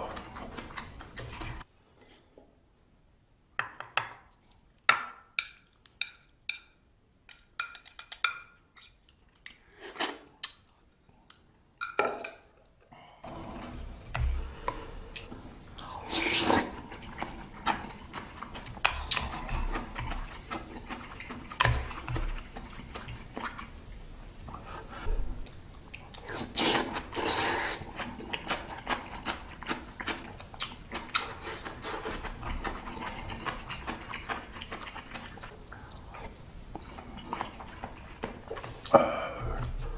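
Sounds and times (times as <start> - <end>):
wet chewing of noodles: 0.0 - 1.7, 13.2 - 39.9.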